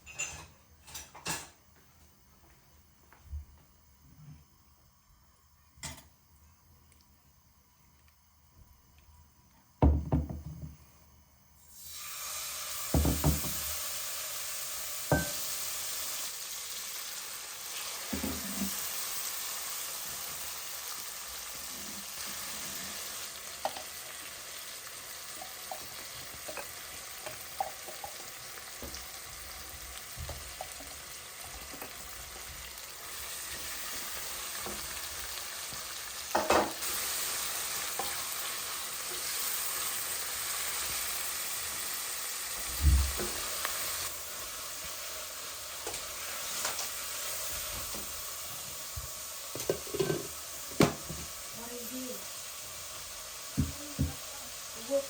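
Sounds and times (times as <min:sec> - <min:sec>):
utensil knocking on a pan: 0:09.8 - 0:10.7, 0:12.9 - 0:13.6
food sizzling in a pan: 0:11.6 - 0:55.0.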